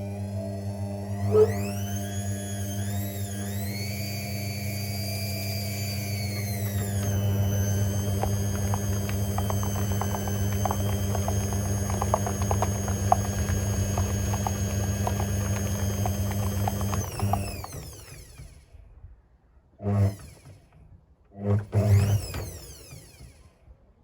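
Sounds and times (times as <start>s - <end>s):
washing machine motor whine: 0.0s - 18.5s, 21.5s - 23.3s
low hum: 6.8s - 17.8s.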